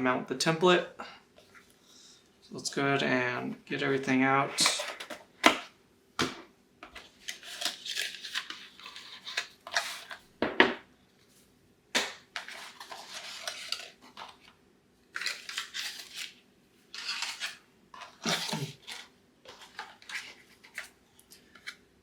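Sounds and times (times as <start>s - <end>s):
packaging crinkling and rustling: 6.9s - 10.3s, 12.3s - 21.8s.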